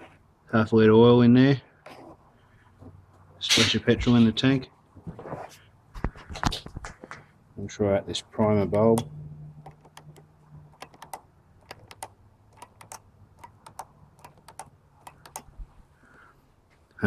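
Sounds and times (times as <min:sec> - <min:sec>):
primer bulb squeezing clicks: 0:08.7 - 0:15.6.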